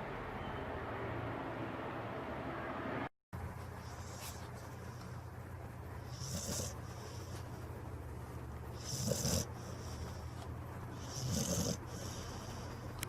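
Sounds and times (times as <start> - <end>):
dog snoring: 6.0 - 7.7, 8.7 - 13.0.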